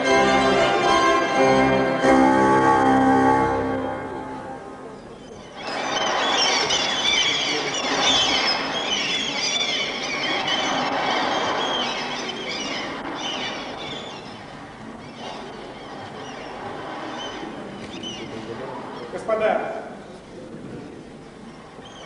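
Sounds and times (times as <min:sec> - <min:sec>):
seagulls crying: 0:05.2 - 0:19.1
surf washing: 0:05.8 - 0:13.8.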